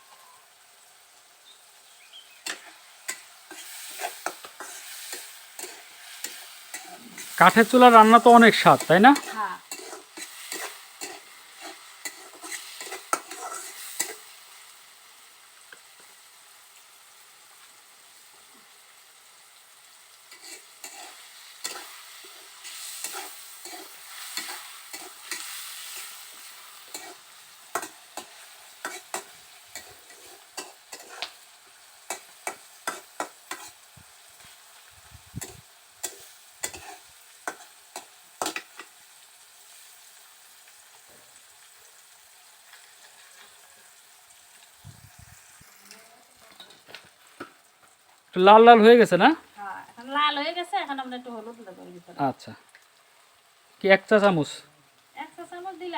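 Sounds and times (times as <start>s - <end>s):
garlic and onion frying: 0.0s - 55.9s
spatula scraping and knocking pan: 9.2s - 14.2s, 26.9s - 31.3s.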